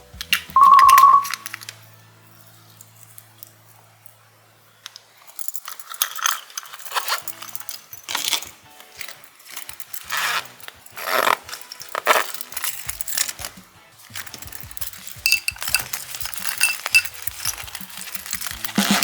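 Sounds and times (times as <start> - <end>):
soft background music: 0.0 - 19.0
small clicks and clinks: 4.8 - 19.0.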